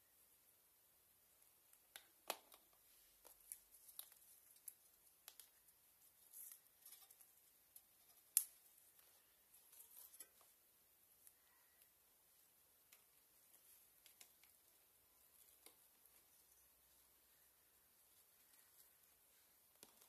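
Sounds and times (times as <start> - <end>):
small parts clicking and snipping: 6.3 - 8.6.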